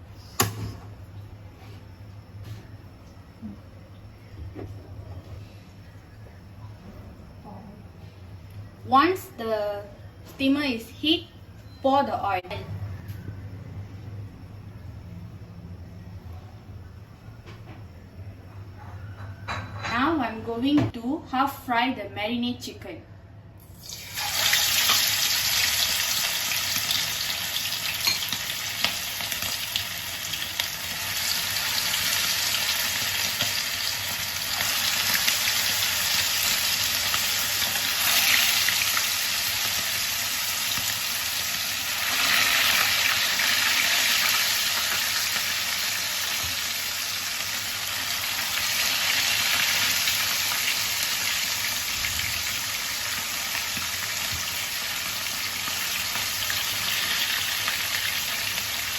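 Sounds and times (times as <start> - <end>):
chicken sizzling in hot oil: 23.7 - 58.9.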